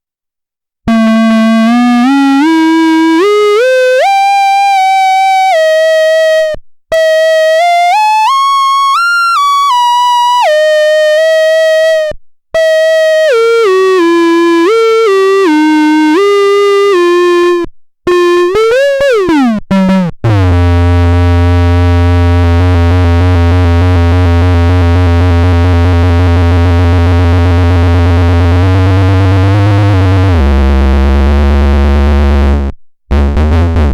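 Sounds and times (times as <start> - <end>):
deep droning synthesizer chord: 22.3 - 33.8
synthesizer note sliding in pitch: 27.2 - 33.9.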